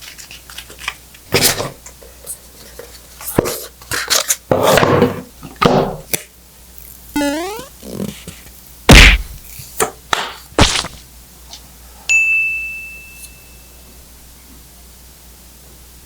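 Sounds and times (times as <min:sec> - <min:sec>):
rising squeak: 0:07.2 - 0:08.1
sharp knocks: 0:08.9 - 0:09.4
high ringing ding: 0:12.1 - 0:13.8.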